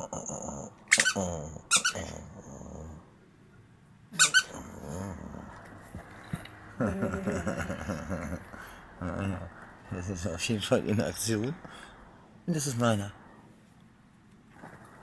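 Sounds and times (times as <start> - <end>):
dog growling low: 0.0 - 3.2, 4.3 - 10.2
squeaky dog toy squeaking: 0.9 - 2.1, 4.2 - 4.6.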